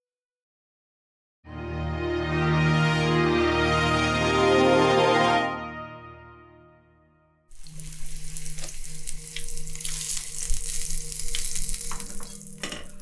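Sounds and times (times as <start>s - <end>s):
soft music: 1.5s - 13.0s
sizzling hiss with crackles: 7.5s - 13.0s.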